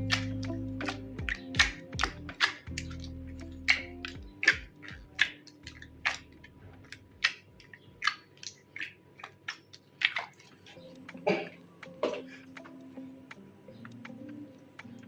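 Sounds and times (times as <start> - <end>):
slime squishing and popping: 0.0 - 10.8.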